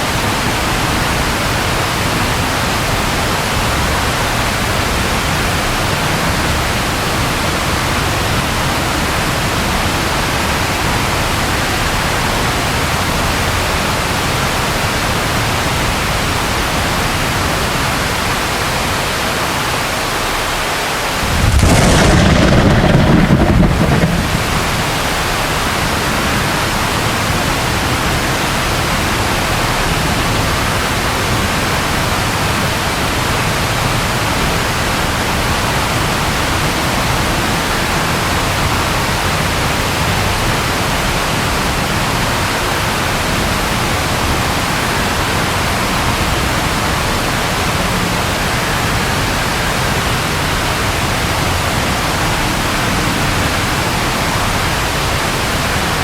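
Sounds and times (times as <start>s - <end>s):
rain hiss: 0.0s - 56.0s
thunder crash: 21.2s - 26.8s.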